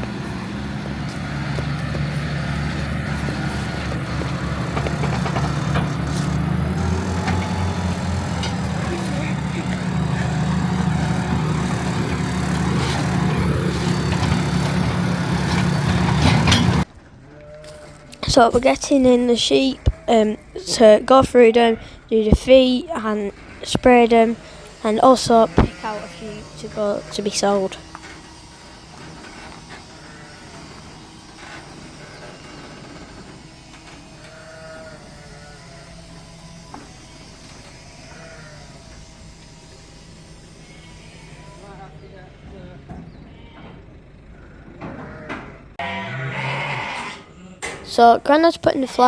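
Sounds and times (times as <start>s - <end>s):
steady low hum: 0.0s - 16.9s
tractor engine running: 0.0s - 17.2s, 17.9s - 34.4s, 41.9s - 46.0s.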